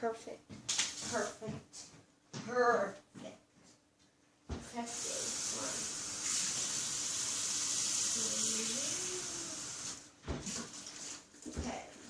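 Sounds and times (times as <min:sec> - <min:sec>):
water running from a tap: 0:04.8 - 0:11.1.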